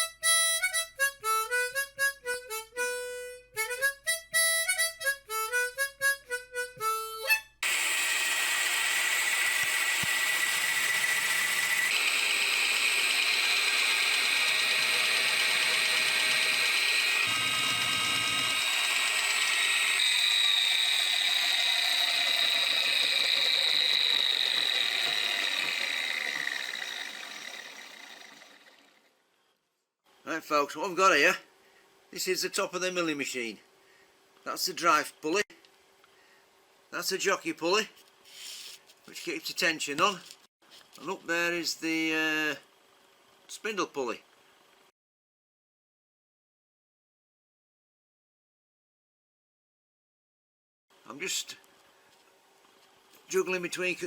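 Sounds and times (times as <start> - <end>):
harmonica tune: 0.0 - 7.8, 12.8 - 28.4
milling machine whining: 7.6 - 29.0.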